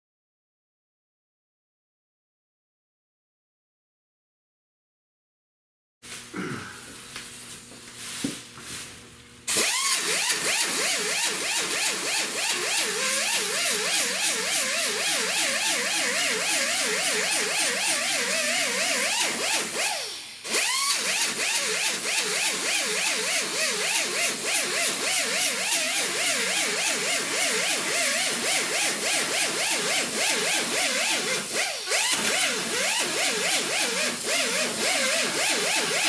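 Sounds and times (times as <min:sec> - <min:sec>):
power tool cutting sheet metal: 0:09.5 - 0:36.0.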